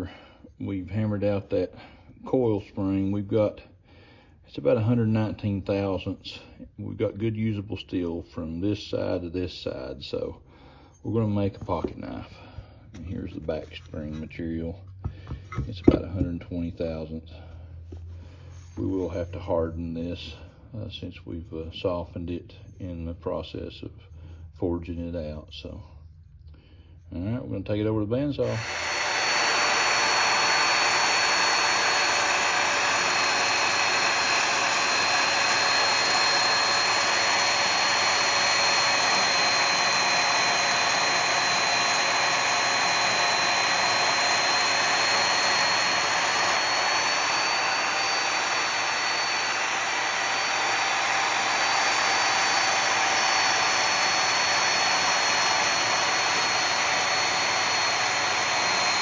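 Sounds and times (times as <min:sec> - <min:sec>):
bandsaw cutting steel: 0:28.4 - 0:59.0.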